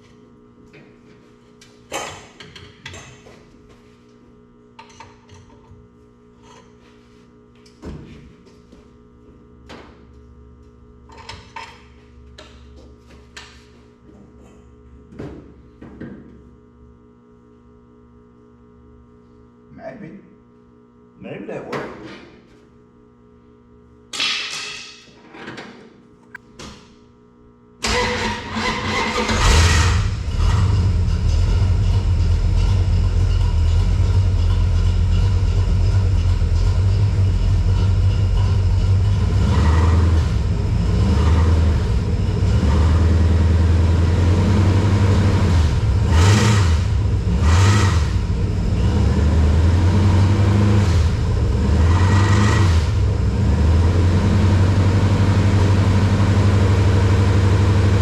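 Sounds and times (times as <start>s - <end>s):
truck engine starting and idling: 27.8s - 58.0s.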